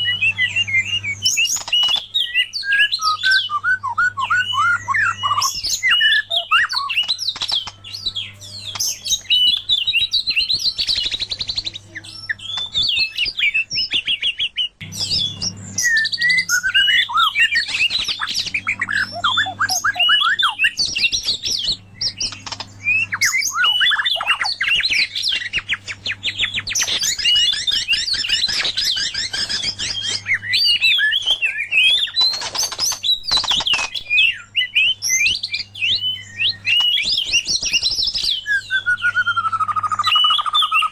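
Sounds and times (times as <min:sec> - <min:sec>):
steady low hum: 0:00.0 - 0:13.1, 0:14.8 - 0:31.3
birds singing: 0:00.0 - 0:40.9.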